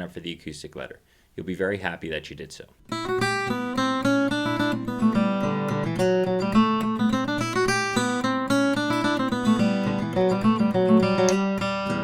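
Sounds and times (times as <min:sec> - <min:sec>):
acoustic guitar playing: 0:02.8 - 0:12.0.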